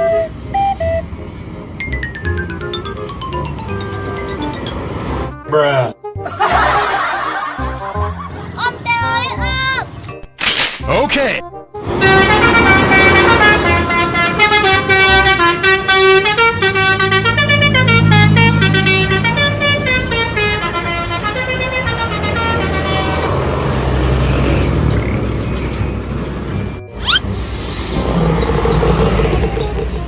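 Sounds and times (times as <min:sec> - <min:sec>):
multi-tone bus horn tune: 0:00.0 - 0:01.1, 0:03.7 - 0:06.2, 0:11.8 - 0:24.8
engine running: 0:11.8 - 0:30.0.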